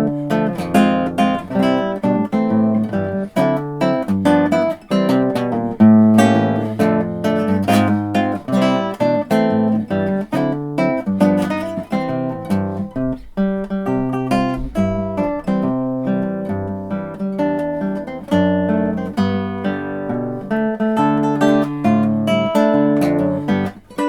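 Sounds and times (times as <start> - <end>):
acoustic guitar playing: 0.0 - 24.0.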